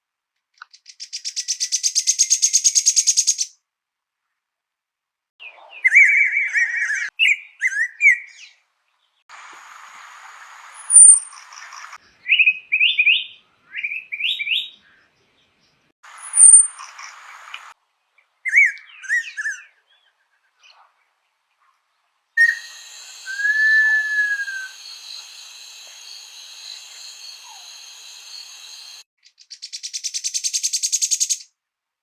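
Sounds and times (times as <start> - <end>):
songbirds chirping: 5.4 - 30.8
long whistled bird note: 10.7 - 11.5, 16.2 - 17.1, 22.4 - 29.1
rapid pulsing bird trill: 16.2 - 17.5, 22.4 - 29.1
steady high buzzing: 22.4 - 29.1.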